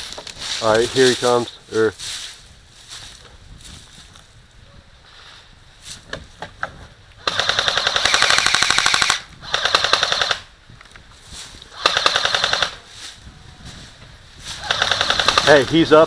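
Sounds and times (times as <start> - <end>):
airsoft gun firing bursts: 7.2 - 10.5, 11.8 - 12.8, 14.6 - 15.6.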